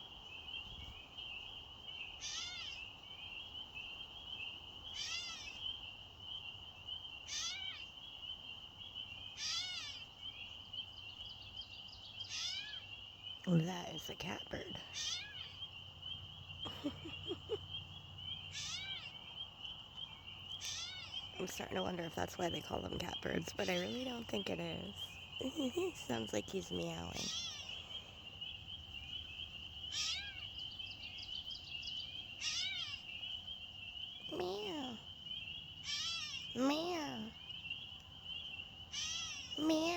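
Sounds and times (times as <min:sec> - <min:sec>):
bird mewing calls: 0:02.1 - 0:02.9, 0:04.8 - 0:05.8, 0:07.2 - 0:07.9, 0:09.3 - 0:10.1, 0:12.2 - 0:12.9, 0:16.6 - 0:19.4, 0:20.0 - 0:39.9
catbird mew call: 0:02.2 - 0:02.9, 0:04.8 - 0:05.8, 0:07.3 - 0:07.9, 0:09.4 - 0:10.1, 0:12.2 - 0:12.9, 0:14.9 - 0:15.7, 0:18.4 - 0:19.3, 0:20.5 - 0:21.3, 0:27.2 - 0:28.0, 0:29.8 - 0:30.6, 0:32.3 - 0:33.3, 0:35.8 - 0:37.4, 0:38.9 - 0:39.9.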